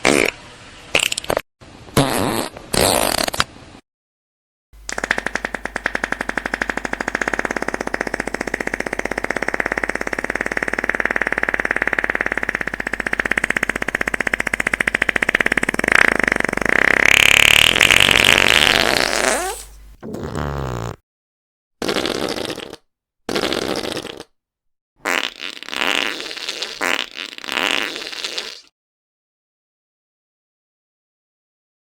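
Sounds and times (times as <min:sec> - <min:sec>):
long buzzing fart: 0:00.0 - 0:00.4, 0:02.0 - 0:03.4, 0:04.8 - 0:21.0, 0:21.8 - 0:24.3, 0:25.0 - 0:28.7
short fart: 0:00.0 - 0:01.4, 0:02.0 - 0:03.5, 0:04.8 - 0:21.0, 0:21.8 - 0:24.3, 0:25.0 - 0:28.7.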